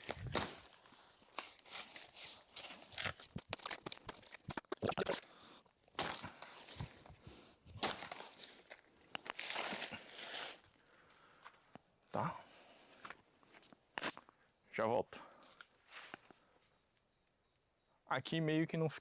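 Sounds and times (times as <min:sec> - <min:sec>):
axe chopping plant: 0:00.0 - 0:05.4, 0:06.0 - 0:10.6
leaves and stems rustling: 0:00.0 - 0:10.9.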